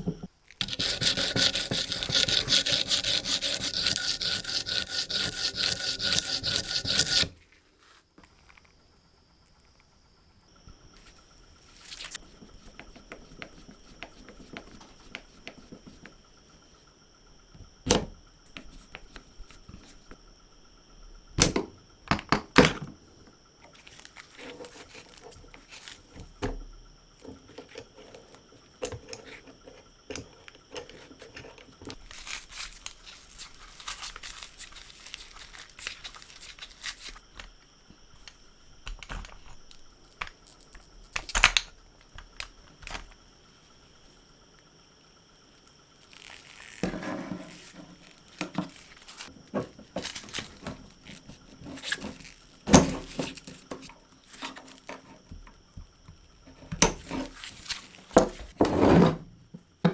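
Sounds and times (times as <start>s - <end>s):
rustling and scraping: 0.0s - 8.8s, 10.9s - 16.9s, 23.6s - 41.3s, 45.7s - 55.4s, 56.4s - 59.2s.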